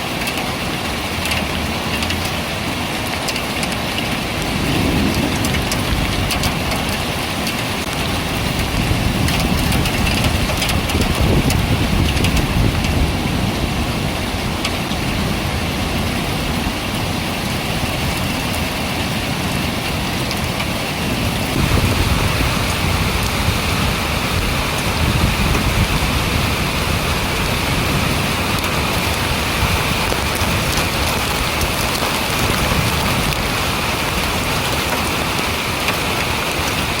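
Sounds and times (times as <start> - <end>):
heavy rain pouring: 0.0 - 37.0
low rumble: 4.4 - 7.1.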